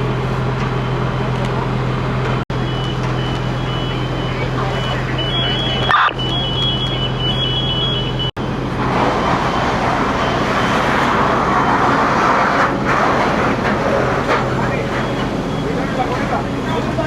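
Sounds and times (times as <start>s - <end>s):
fire engine hum: 0.0s - 17.0s
high electronic beep: 2.5s - 8.3s
rushing noise: 2.6s - 17.0s.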